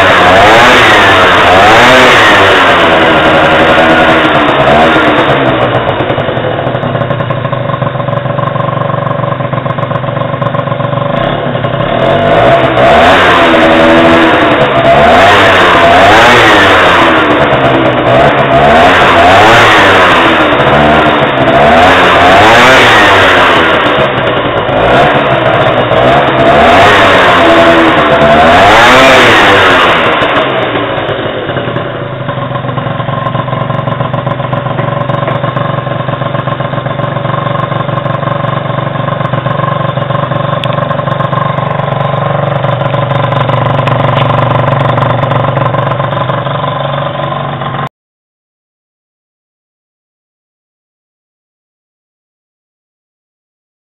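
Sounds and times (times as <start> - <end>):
scooter engine revving and idling: 0.0 - 47.9.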